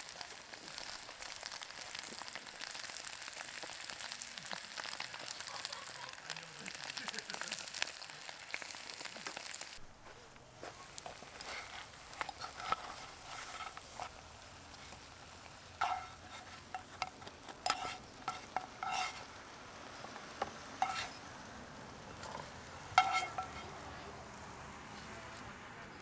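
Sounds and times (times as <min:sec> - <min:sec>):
faint sizzle in frying pan: 0:00.0 - 0:26.0
utensil clinking against pan: 0:10.9 - 0:19.4, 0:20.0 - 0:21.3, 0:22.2 - 0:23.8.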